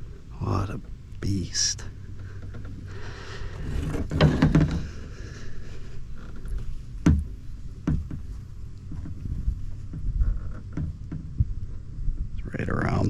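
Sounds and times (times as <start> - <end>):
low steady rumble: 0.0 - 13.0
handling knocks and rustling: 1.9 - 11.6.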